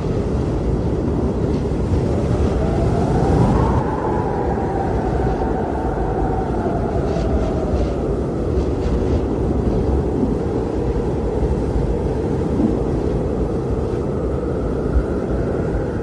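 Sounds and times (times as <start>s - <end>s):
blizzard wind rumbling: 0.0s - 16.0s
faint whistling howl: 2.1s - 9.1s.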